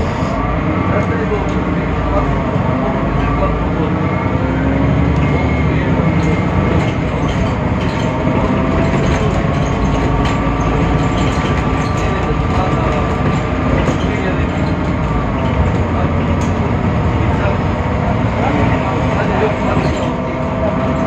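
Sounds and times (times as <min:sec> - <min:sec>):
bus engine running on board: 0:00.0 - 0:21.0
rattles: 0:06.2 - 0:17.5.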